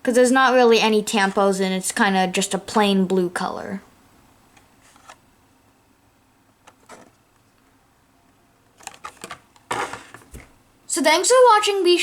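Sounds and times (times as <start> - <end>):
rustles and clicks of handling: 4.5 - 5.2, 6.5 - 7.8, 8.6 - 10.6.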